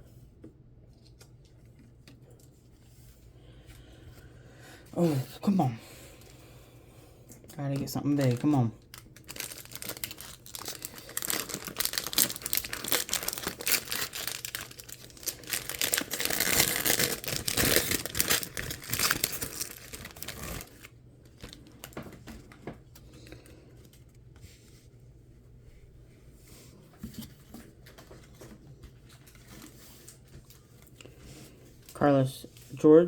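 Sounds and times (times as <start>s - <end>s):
faint handling sounds: 0.0s - 5.0s, 6.0s - 33.0s
foil wrapper tearing and crinkling: 7.6s - 22.1s.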